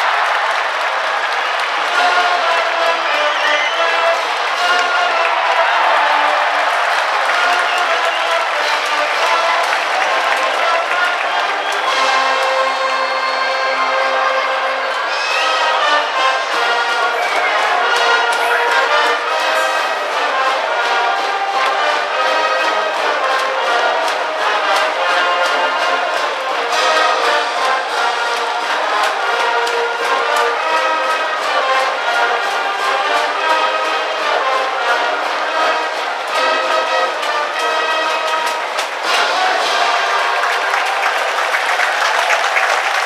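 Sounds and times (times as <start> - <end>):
brass band playing: 0.0 - 43.0
steady drum beat: 16.4 - 42.9.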